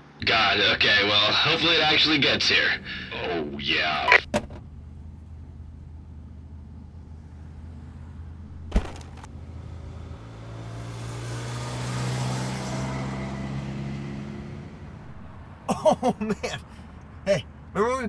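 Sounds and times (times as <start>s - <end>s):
road noise: 1.6s - 18.0s
vehicle engine humming: 13.0s - 18.0s.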